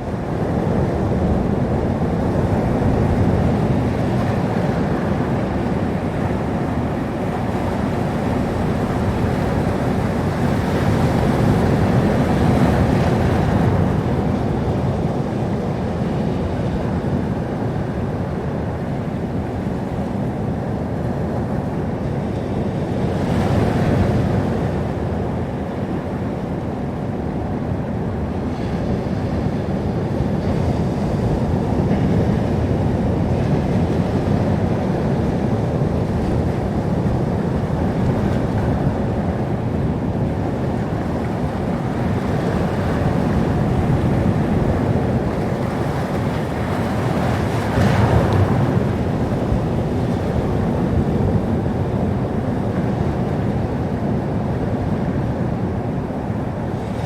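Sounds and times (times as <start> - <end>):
waves washing in: 0.0 - 57.0
wave breaking: 40.5 - 53.6.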